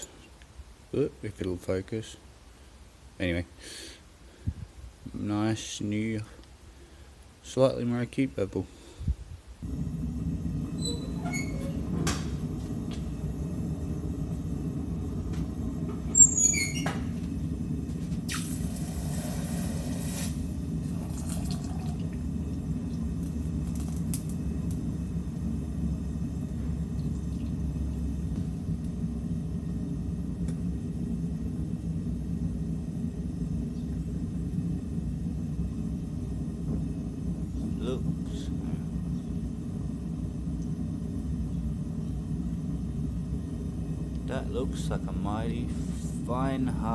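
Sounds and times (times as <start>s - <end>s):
loud hiss: 3.6s - 4.6s, 18.2s - 20.8s
forge burner roaring: 4.2s - 46.9s.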